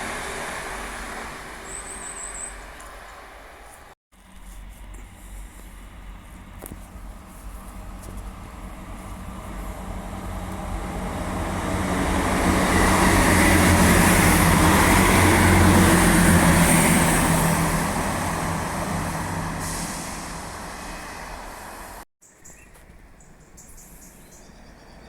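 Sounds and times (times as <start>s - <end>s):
train rumble and rail noise: 0.0s - 22.0s
low traction hum: 4.2s - 15.8s.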